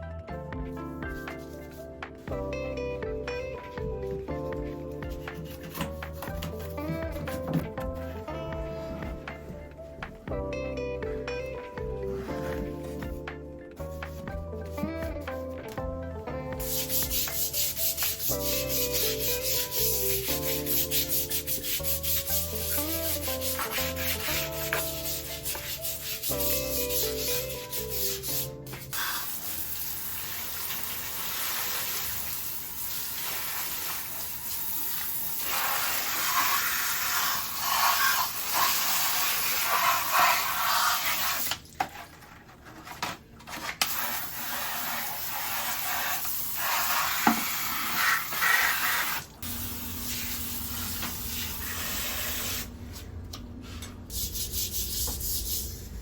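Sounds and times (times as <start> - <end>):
scrubbing and rubbing: 3.6 - 9.7, 16.6 - 29.4, 35.5 - 49.3, 54.1 - 56.0.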